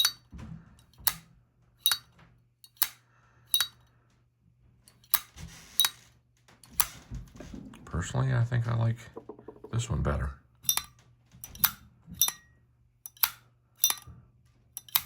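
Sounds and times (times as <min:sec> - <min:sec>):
lighter lid metallic clicks: 0:13.1 - 0:14.0.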